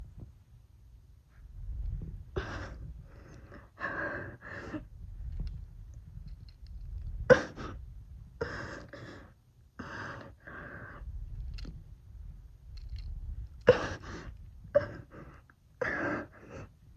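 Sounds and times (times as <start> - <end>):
person breathing hard: 2.3 - 5.3, 7.4 - 11.3, 13.6 - 16.9.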